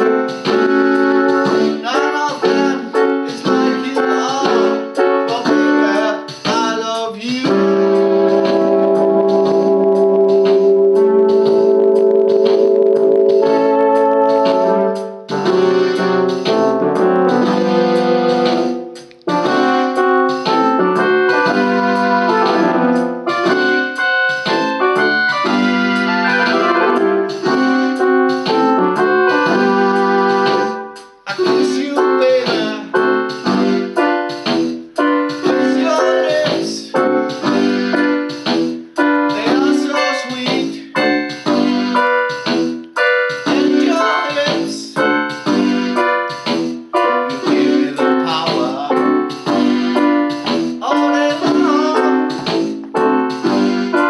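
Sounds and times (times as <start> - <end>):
electronic keyboard chords: 0.0 - 54.0.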